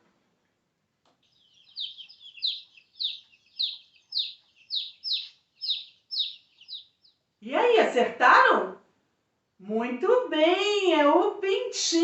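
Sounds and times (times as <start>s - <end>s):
chick peeping: 1.1s - 7.4s.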